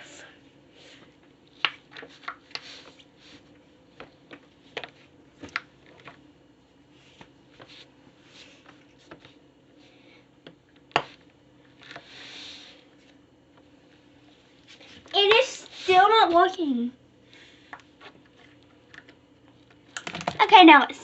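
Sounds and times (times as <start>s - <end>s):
plastic toys clicking: 19.9s - 20.4s.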